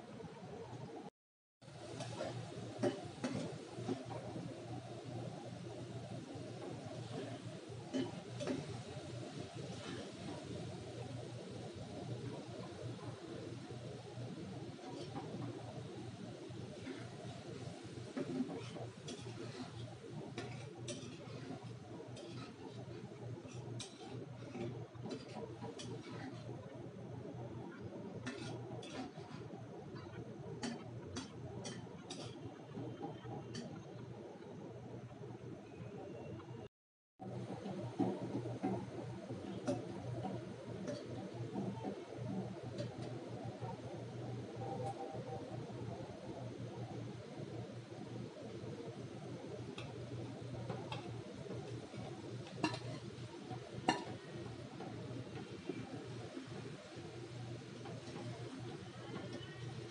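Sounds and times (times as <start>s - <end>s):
steady low hum: 1.7s - 59.9s.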